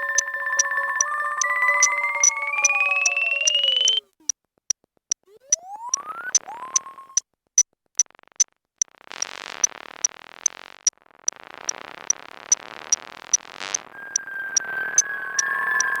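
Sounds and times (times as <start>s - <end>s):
electronic synthesizer music: 0.0s - 4.0s, 14.0s - 16.0s.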